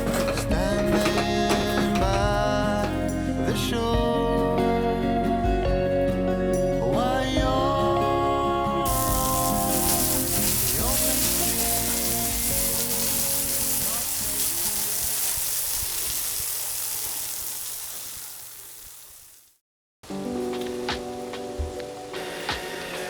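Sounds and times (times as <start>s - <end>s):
background music: 0.0s - 15.6s, 20.0s - 23.0s
fountain water splashing: 8.9s - 19.5s.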